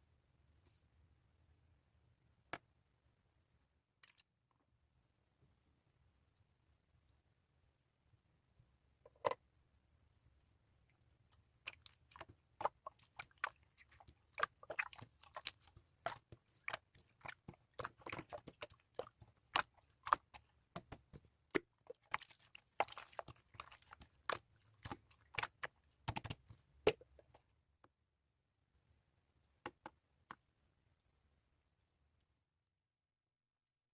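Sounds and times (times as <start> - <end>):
irregular sharp clicks and crunches: 17.5 - 26.6.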